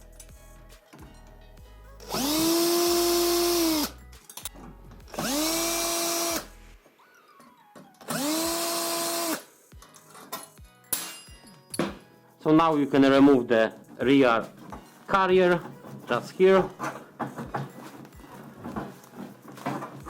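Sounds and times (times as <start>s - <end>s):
cordless drill motor: 2.0s - 4.0s, 5.1s - 6.5s, 8.1s - 9.5s.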